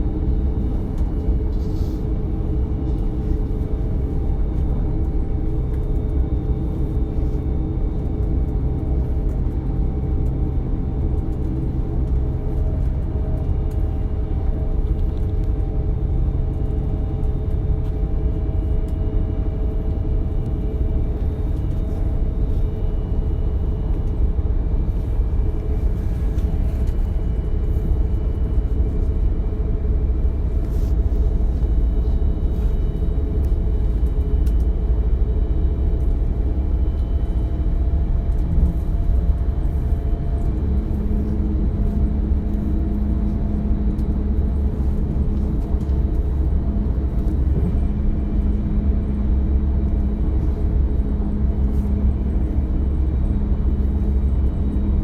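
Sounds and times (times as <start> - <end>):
steady hum: 0.0 - 55.0
train wheels rumbling on track: 29.0 - 55.0.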